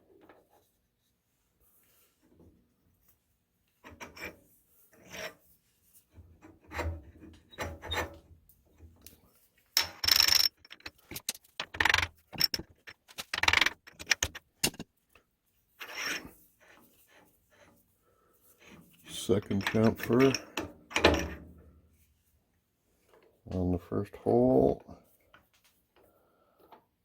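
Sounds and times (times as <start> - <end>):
metal parts scraping and clinking: 9.8 - 14.8, 19.1 - 21.4.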